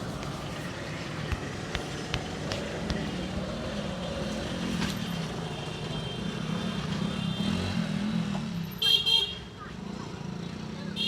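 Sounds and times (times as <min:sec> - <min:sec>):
vehicle engine humming: 0:00.0 - 0:07.1
traffic noise: 0:00.0 - 0:11.0.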